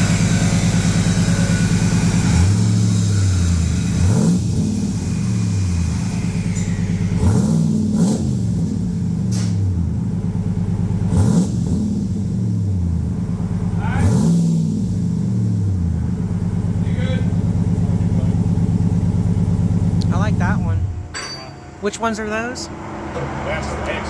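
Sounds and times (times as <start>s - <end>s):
engine idling and revving: 0.0s - 21.1s, 22.1s - 24.0s.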